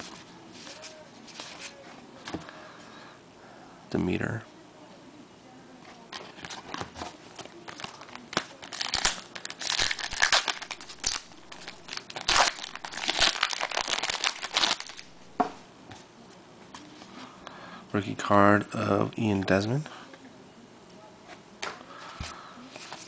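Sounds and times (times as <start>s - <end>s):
foil wrapper crinkling and tearing: 7.5s - 15.2s.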